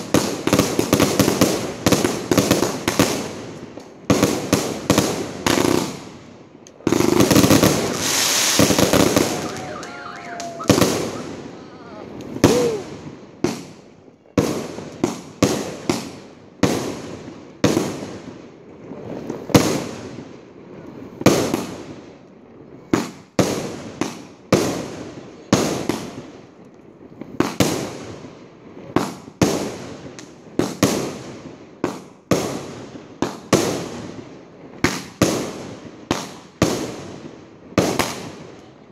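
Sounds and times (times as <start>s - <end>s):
fireworks bangs and crackle: 0.0s - 38.9s.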